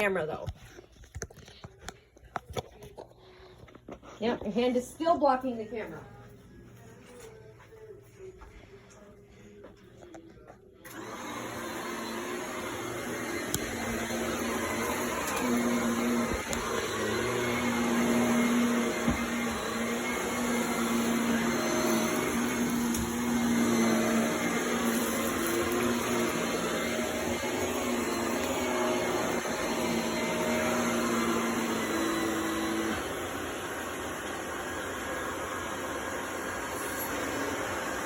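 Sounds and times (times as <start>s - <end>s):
vacuum cleaner motor hum: 10.9s - 38.0s.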